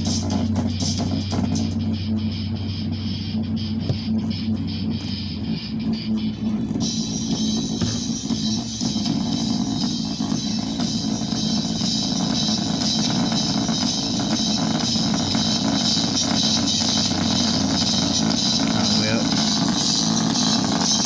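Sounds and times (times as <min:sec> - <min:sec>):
loud music with drums and guitar: 0:00.0 - 0:21.0.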